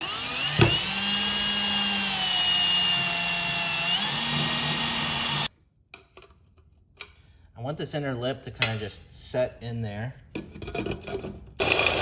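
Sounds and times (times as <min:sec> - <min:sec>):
electric drill whining: 0:00.0 - 0:05.5, 0:11.6 - 0:12.0.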